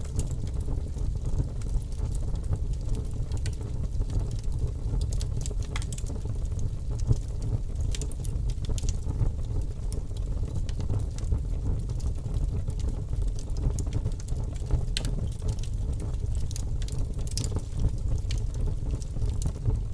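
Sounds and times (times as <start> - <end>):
sharp crackles and clicks: 11.9 - 19.9.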